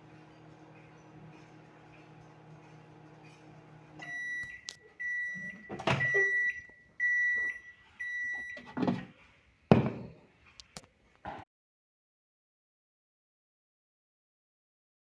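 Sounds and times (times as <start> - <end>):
microwave oven humming: 0.0 - 8.6
microwave beeping: 0.0 - 9.1.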